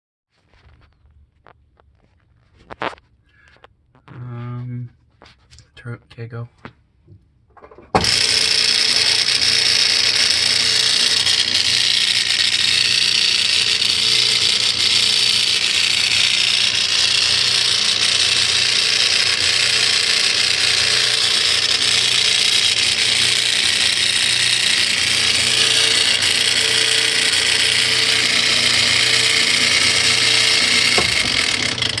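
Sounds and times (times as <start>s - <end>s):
washing machine whirring: 7.5s - 32.0s.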